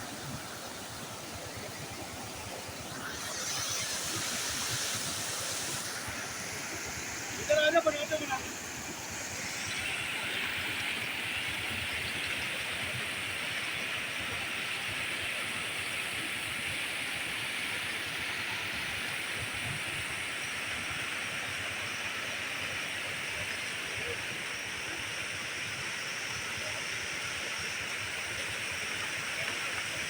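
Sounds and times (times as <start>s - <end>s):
waterfall rushing: 0.1s - 12.5s.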